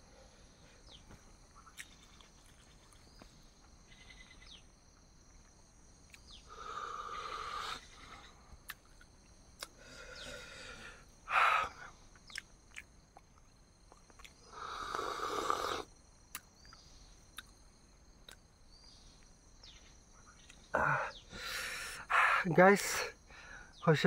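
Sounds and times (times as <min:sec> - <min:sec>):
wet mouth clicks: 0:01.8 - 0:02.6, 0:06.1 - 0:06.4, 0:08.6 - 0:09.8, 0:12.2 - 0:17.6
person breathing heavily: 0:09.7 - 0:12.1, 0:20.8 - 0:23.8
groaning exhale: 0:09.8 - 0:11.9.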